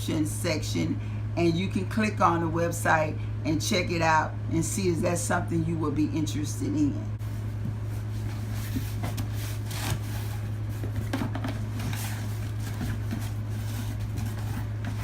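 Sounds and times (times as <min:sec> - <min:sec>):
low room hum: 0:00.0 - 0:15.0
faint rustles and taps: 0:07.3 - 0:15.0.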